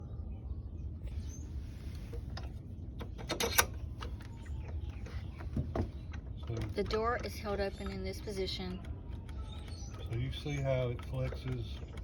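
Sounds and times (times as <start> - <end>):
screen door clicks and knocks: 5.4 - 12.0.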